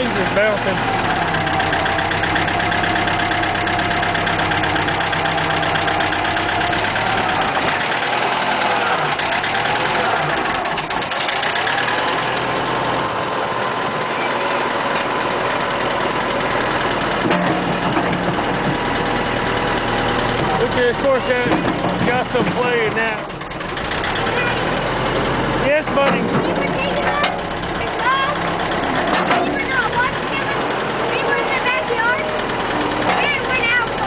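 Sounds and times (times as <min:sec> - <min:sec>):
backhoe engine idling: 0:00.0 - 0:34.0.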